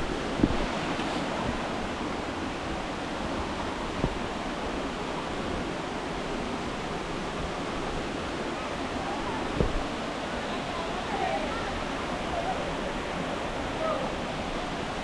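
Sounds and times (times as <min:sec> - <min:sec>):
waterfall rushing: 0:00.0 - 0:15.0
thump: 0:00.4 - 0:00.6, 0:09.6 - 0:09.9.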